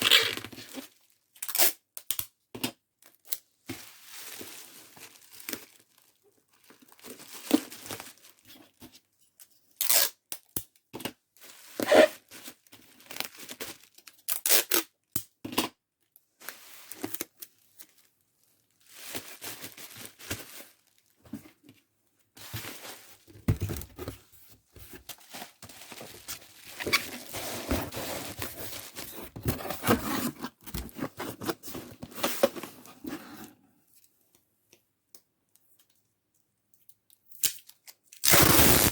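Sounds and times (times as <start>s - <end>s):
packing material rustling: 4.1s - 8.5s, 22.4s - 32.7s, 38.2s - 38.9s
packing material tearing: 9.8s - 10.2s, 14.3s - 14.8s, 37.4s - 38.9s.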